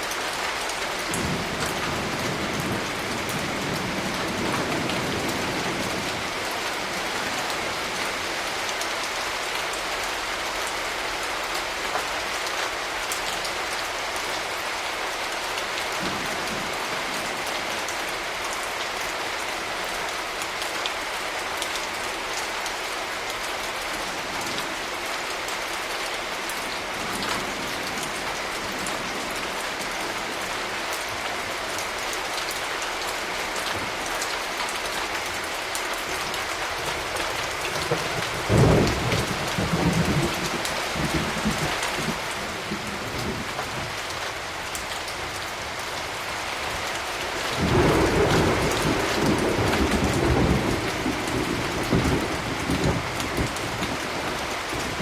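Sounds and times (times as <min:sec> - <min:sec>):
steady rain falling: 0:00.0 - 0:55.0
thunder rumbling: 0:37.8 - 0:44.0, 0:47.5 - 0:55.0.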